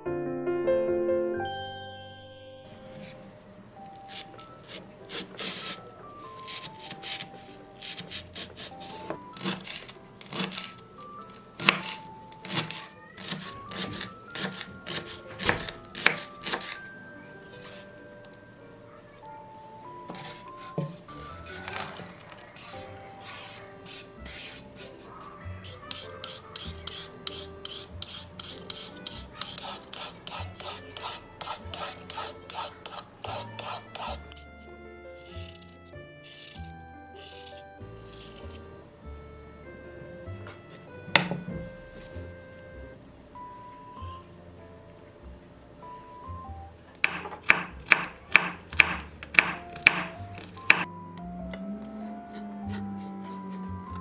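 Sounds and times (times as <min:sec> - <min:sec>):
soft background music: 0:00.0 - 0:54.0
food rasping on a grater: 0:04.1 - 0:05.8, 0:22.6 - 0:34.2
knife chopping on cutting board: 0:04.2 - 0:05.8, 0:11.6 - 0:16.8, 0:25.6 - 0:34.2, 0:41.1 - 0:41.7, 0:47.0 - 0:50.9.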